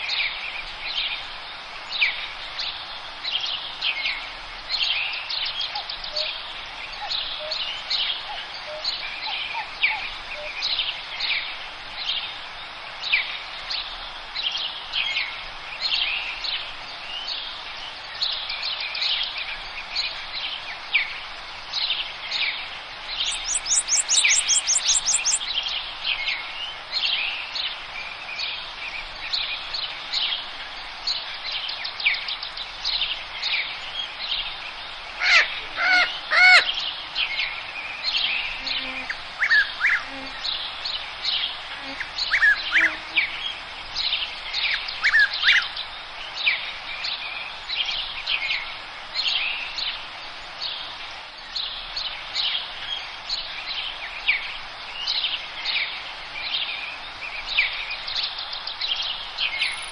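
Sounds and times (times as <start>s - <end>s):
background hiss: 0.0s - 59.9s
birds chirping and singing: 23.2s - 25.4s, 35.2s - 47.2s, 57.4s - 59.9s
bird fast trill: 23.3s - 25.4s, 59.6s - 59.9s.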